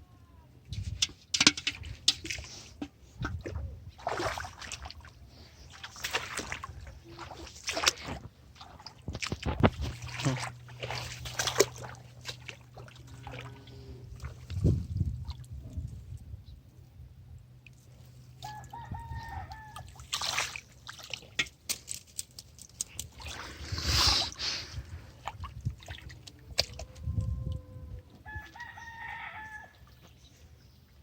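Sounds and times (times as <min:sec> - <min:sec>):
rooster crowing: 0:18.4 - 0:19.9, 0:27.3 - 0:29.8.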